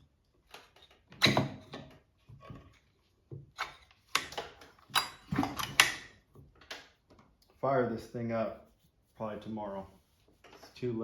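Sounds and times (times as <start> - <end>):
tools and parts clicking and knocking: 0.4 - 7.3.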